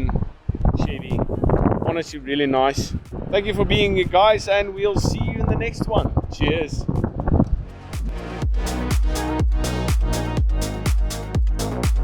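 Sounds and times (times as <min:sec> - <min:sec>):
kick drum: 0:02.9 - 0:04.2, 0:06.8 - 0:12.0
crisp hi-hats: 0:07.6 - 0:12.0
electronic dance music: 0:07.6 - 0:12.0.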